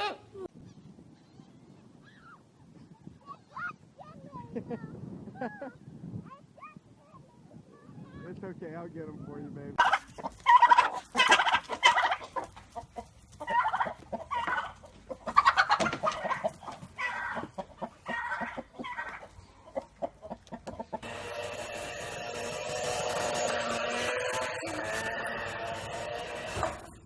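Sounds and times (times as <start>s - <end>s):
chickens clucking and squawking: 9.8s - 27.0s.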